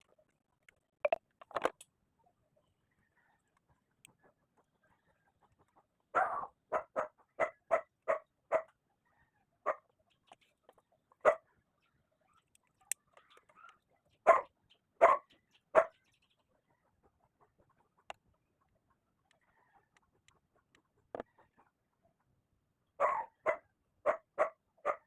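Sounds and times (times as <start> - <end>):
dog barking: 6.1 - 8.7, 9.6 - 9.8, 11.2 - 11.5, 14.2 - 16.0, 23.0 - 25.0.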